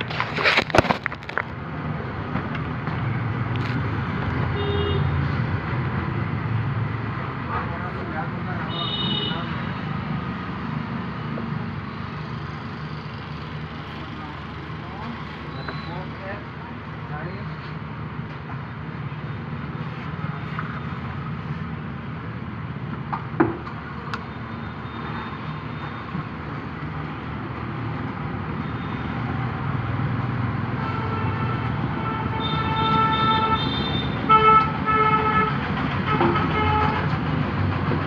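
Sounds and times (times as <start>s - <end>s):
road traffic rumble: 0.0s - 38.0s
vehicle horn blasts: 4.6s - 5.1s, 30.8s - 35.5s.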